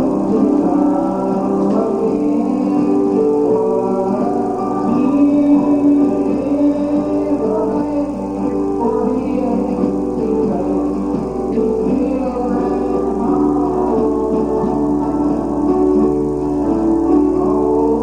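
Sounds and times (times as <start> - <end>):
group singing gospel: 0.0 - 18.0
guitar accompaniment: 0.0 - 18.0.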